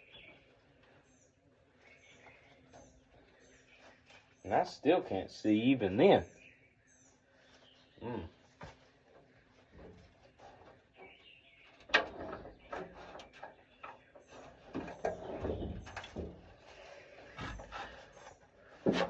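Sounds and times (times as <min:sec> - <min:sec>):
heavy knocks and scrapes: 0:11.8 - 0:19.0.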